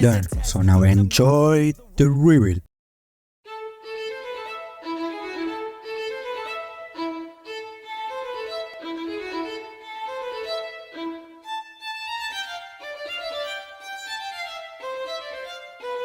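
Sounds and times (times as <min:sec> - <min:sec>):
violin melody: 0:03.4 - 0:16.0.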